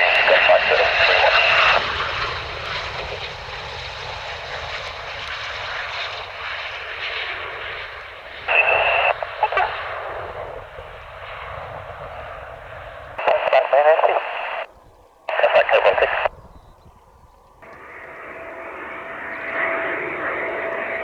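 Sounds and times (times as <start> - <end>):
radio burst: 0.0 - 2.2, 8.4 - 10.6, 13.2 - 14.7, 15.3 - 16.4
jet engine noise: 0.0 - 21.0.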